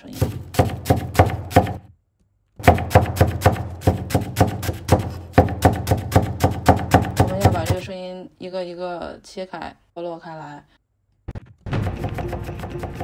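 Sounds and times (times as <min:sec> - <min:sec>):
knife chopping vegetables on board: 0:00.1 - 0:01.9, 0:02.6 - 0:07.9.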